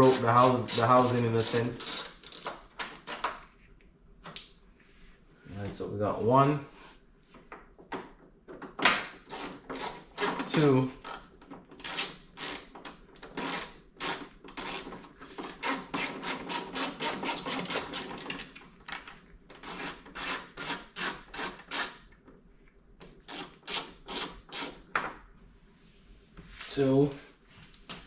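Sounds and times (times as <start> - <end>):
ratchet wrench rasping: 0.0 - 2.4, 11.8 - 14.9.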